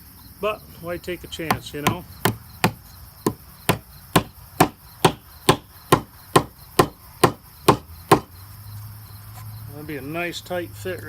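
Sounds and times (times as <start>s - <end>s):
hammer blows on wooden wedge: 1.4s - 8.3s.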